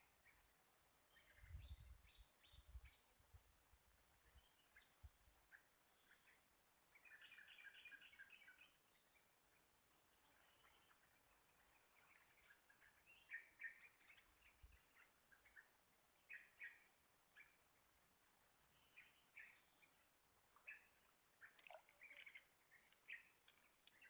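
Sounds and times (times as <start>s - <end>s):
faint bird chirps: 0.0s - 24.0s
steady high hiss: 0.0s - 24.0s.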